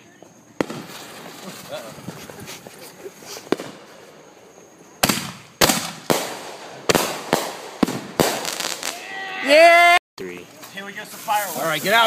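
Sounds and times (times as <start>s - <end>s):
fireworks bangs: 0.0s - 9.3s.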